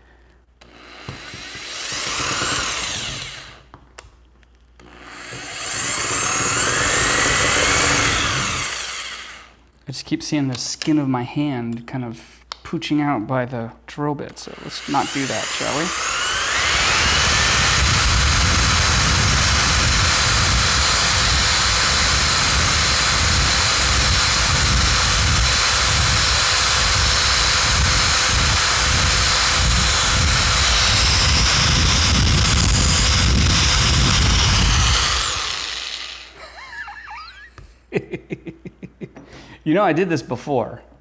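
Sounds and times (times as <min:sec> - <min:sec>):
electric drill whining: 0:00.6 - 0:03.7, 0:04.8 - 0:09.5, 0:14.5 - 0:37.7.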